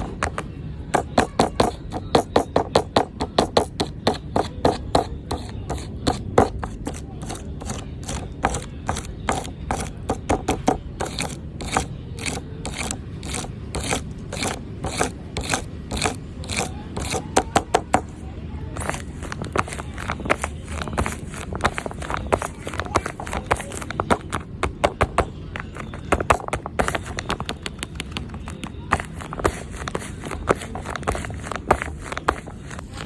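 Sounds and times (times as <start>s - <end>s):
fidget board clicking and clacking: 0.0s - 18.2s, 18.8s - 33.0s.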